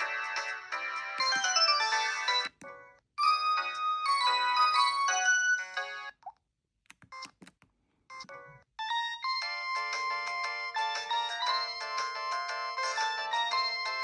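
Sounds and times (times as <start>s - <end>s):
mobile phone ringtone melody: 0.0s - 6.1s.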